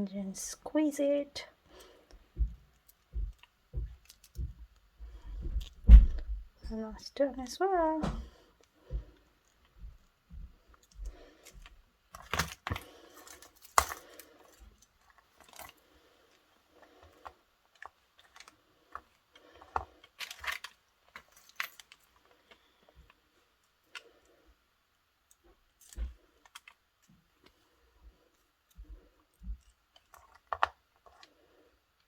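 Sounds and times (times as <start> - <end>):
metal parts and pliers clinking: 20.1 - 22.2.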